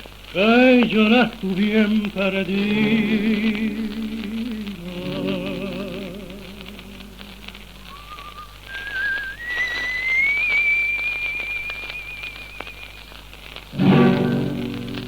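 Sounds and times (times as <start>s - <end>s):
record surface crackle: 0.0s - 15.0s
whistled phrase: 7.8s - 13.2s.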